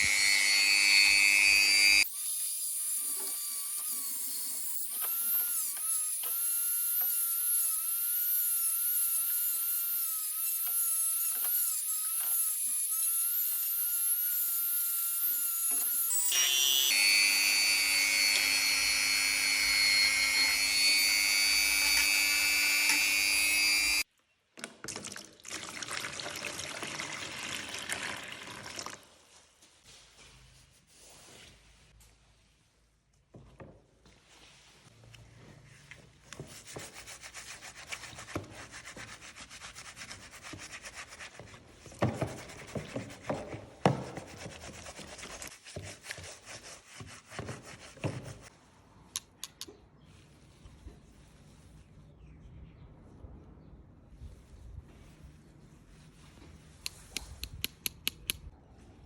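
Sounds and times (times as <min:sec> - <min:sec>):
power tool motor whine: 0:00.0 - 0:02.1, 0:14.0 - 0:24.0
rough noisy power tool sound: 0:00.0 - 0:02.1, 0:15.2 - 0:24.0.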